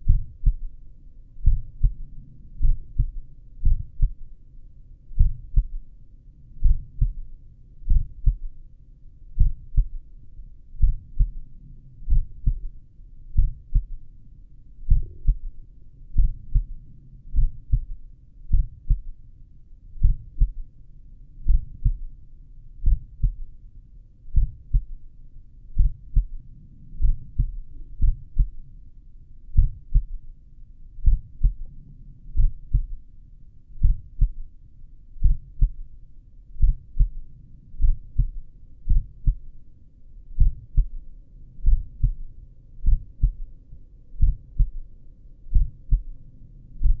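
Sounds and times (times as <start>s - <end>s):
heartbeat through stethoscope: 0.0s - 0.8s, 1.4s - 4.3s, 5.2s - 5.9s, 6.6s - 7.3s, 7.9s - 8.6s, 9.4s - 10.0s, 10.8s - 11.4s, 12.0s - 12.7s, 13.4s - 14.0s, 14.9s - 15.5s, 16.2s - 16.7s, 17.3s - 19.1s, 20.0s - 20.6s, 21.4s - 22.1s, 22.8s - 23.5s, 24.3s - 25.0s, 25.8s - 26.4s, 27.0s - 28.6s, 29.6s - 30.2s, 31.0s - 31.7s, 32.4s - 33.0s, 33.8s - 34.5s, 35.2s - 35.8s, 36.6s - 37.2s, 37.8s - 39.5s, 40.4s - 41.0s, 41.6s - 43.5s, 44.2s - 44.8s, 45.5s - 46.2s, 46.8s - 47.0s.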